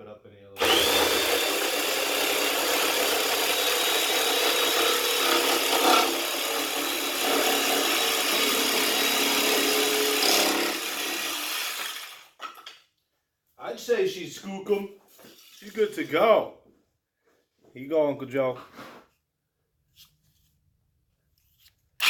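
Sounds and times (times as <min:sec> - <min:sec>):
jigsaw cutting plastic: 0:00.6 - 0:12.3.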